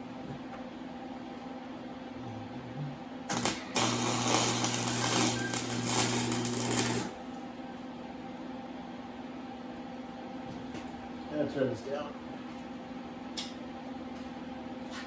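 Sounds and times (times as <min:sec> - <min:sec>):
welder electrical hum: 0:00.0 - 0:14.9
welding arc crackling: 0:03.3 - 0:07.2.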